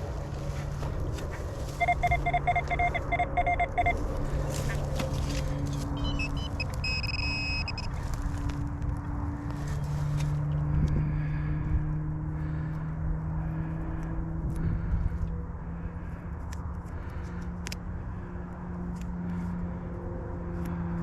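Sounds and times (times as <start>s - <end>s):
metal detector steady tone: 0.0s - 4.2s, 5.7s - 8.0s
metal detector beeps: 1.7s - 4.0s, 5.7s - 7.9s.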